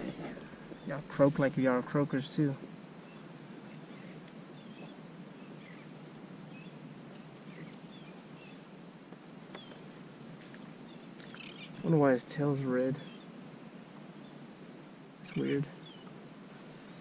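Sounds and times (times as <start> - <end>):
high bird chirps: 10.8 - 11.9.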